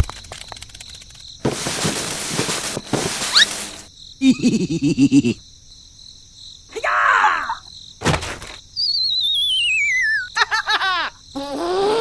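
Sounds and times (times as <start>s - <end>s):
quick squeaky chirps: 2.6s - 3.9s.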